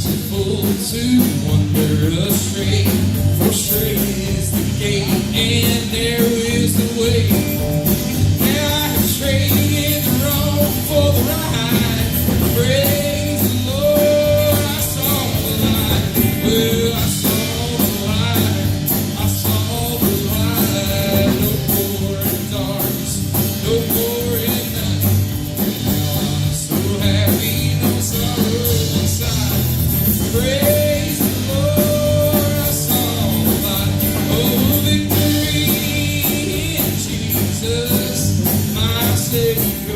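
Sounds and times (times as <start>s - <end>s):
band playing guitar bass drums: 0.0s - 39.9s
voices singing: 0.0s - 39.9s.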